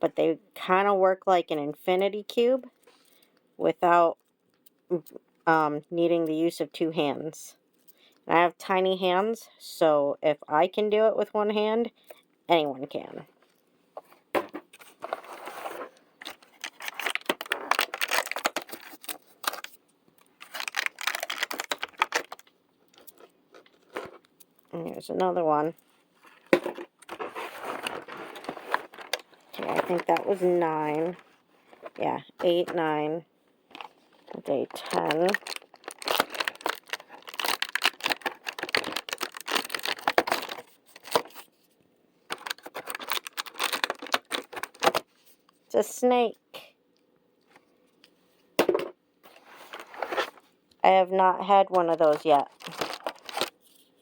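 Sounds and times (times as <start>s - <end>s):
cardboard tearing and crinkling: 14.9s - 19.8s, 20.4s - 22.5s, 26.4s - 30.4s, 34.9s - 41.5s, 42.3s - 45.0s, 52.5s - 53.6s.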